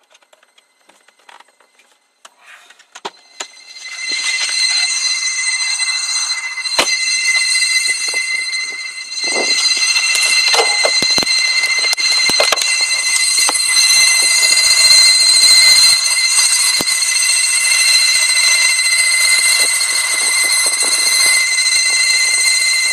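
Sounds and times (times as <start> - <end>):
high-pitched squeal: 2.4 - 22.9.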